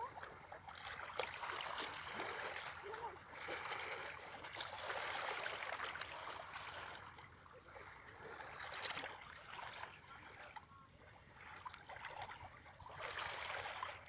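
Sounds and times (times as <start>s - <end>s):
small waves on stony beach: 0.0s - 7.0s.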